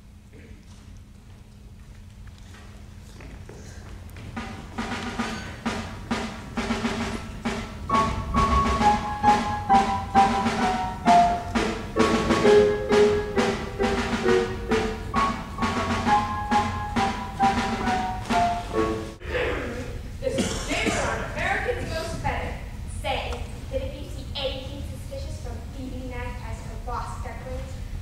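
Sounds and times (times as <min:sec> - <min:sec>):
drum kit beat: 0:03.9 - 0:19.5
melody of held notes: 0:04.7 - 0:19.2.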